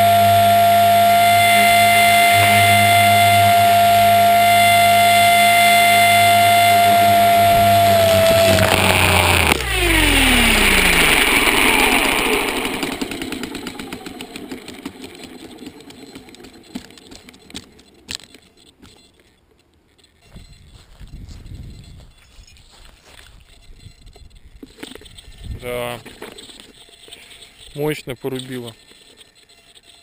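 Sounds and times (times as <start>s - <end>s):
helicopter motor and rotor whine: 0.0s - 18.6s.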